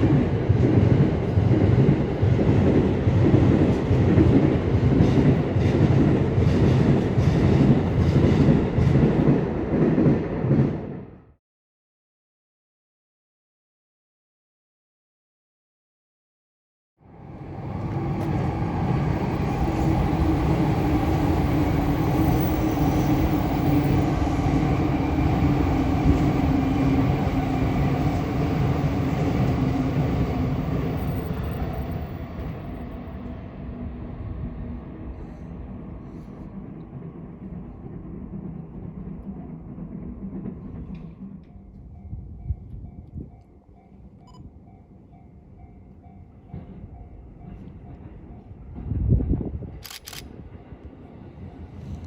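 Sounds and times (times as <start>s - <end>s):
train running past: 0.0s - 11.3s, 17.0s - 52.0s.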